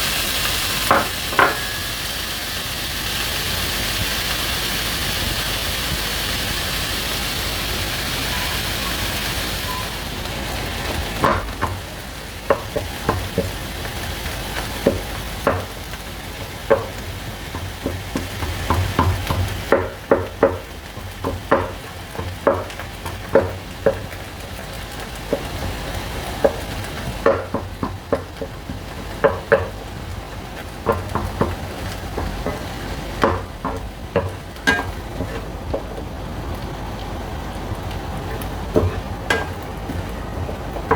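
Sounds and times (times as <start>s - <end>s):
food sizzling in a frying pan: 0.0s - 40.9s
utensil scraping a pan: 16.6s - 35.9s.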